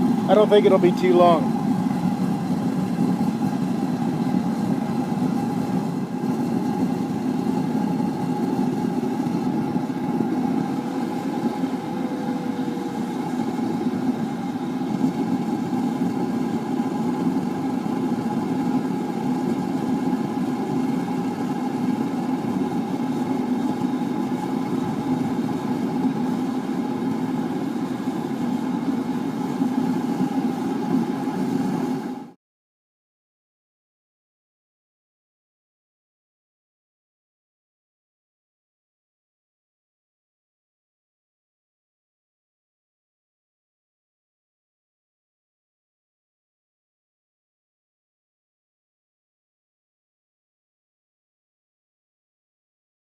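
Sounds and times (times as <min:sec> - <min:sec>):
high whine: 0:00.0 - 0:32.2
propane burner roaring: 0:00.0 - 0:32.4.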